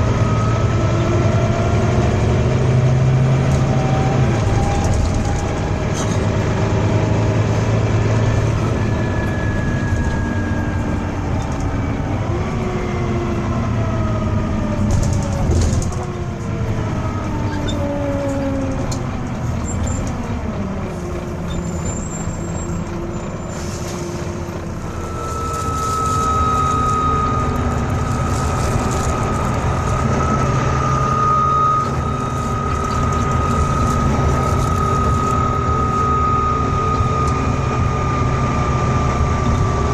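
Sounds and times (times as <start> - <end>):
bus engine running: 0.0 - 39.9
whines gliding down in pitch: 8.1 - 14.4, 24.7 - 39.9.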